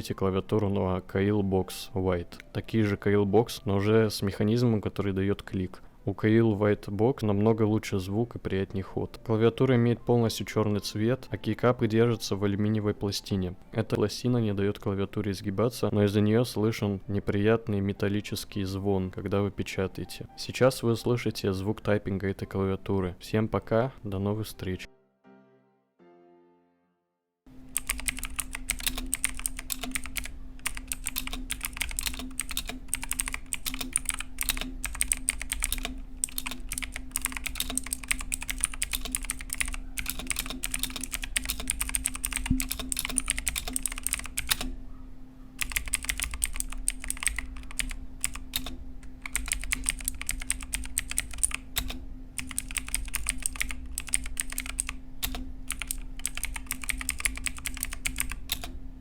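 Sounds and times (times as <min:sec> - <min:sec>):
fast typing on mechanical keyboard: 0:27.7 - 0:44.7, 0:45.6 - 0:58.7.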